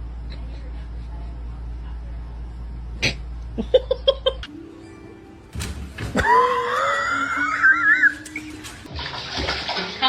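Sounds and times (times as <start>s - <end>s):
music with long high note: 4.5s - 8.7s.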